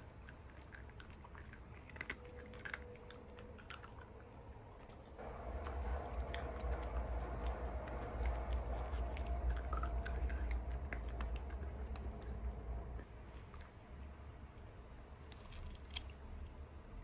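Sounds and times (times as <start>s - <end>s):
dog chewing food: 0.0s - 14.3s
low rumble: 4.0s - 13.6s
crisp clicks: 15.3s - 16.2s.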